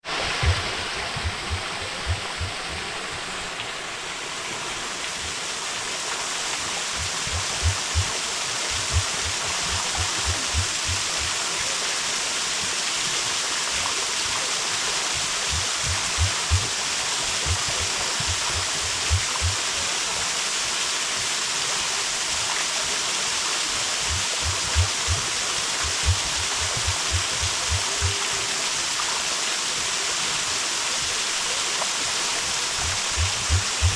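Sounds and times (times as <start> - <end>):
stream water rushing: 0.0 - 33.9
low thumps: 0.2 - 2.8, 7.0 - 11.2, 15.5 - 16.7, 17.4 - 19.6, 24.1 - 28.2, 32.8 - 33.9.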